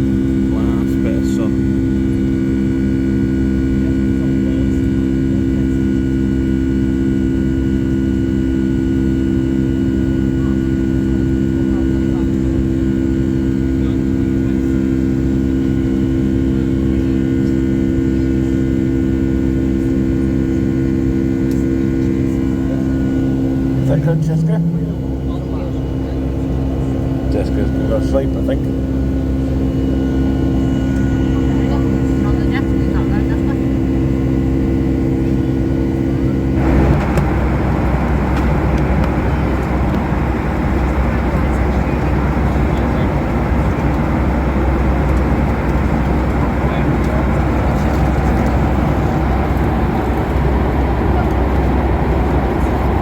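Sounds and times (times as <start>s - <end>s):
jet engines droning in cabin: 0.0s - 53.0s
vehicle rumble from inside cabin: 28.7s - 53.0s
broad rushing noise: 36.6s - 41.3s.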